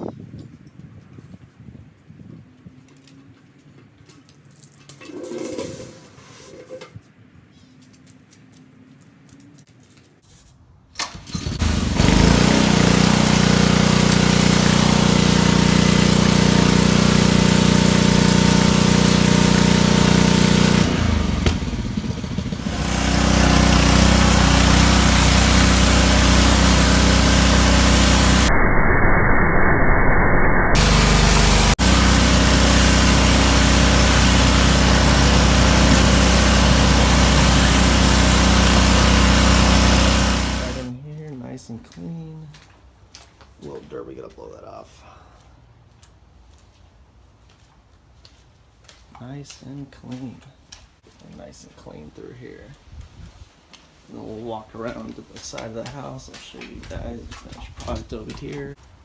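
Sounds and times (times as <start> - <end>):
small gasoline engine running: 11.1 - 28.5, 30.8 - 40.9.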